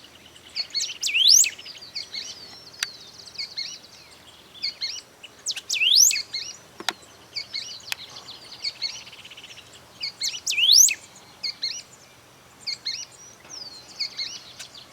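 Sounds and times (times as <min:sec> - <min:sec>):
bird trill: 0:00.0 - 0:12.0
bird chirping: 0:00.0 - 0:14.9
bird singing whistled phrases: 0:00.6 - 0:02.4, 0:05.5 - 0:06.5, 0:10.2 - 0:11.0.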